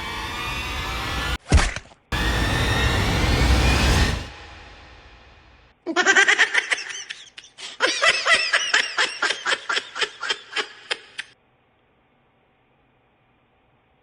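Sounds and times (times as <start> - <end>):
person laughing hard: 5.9 - 11.3.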